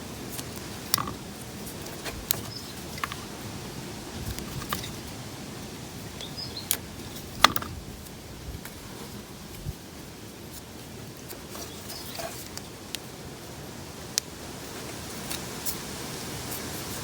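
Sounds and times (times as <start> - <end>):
tools clicking and knocking: 0.9 - 1.2, 7.4 - 7.8.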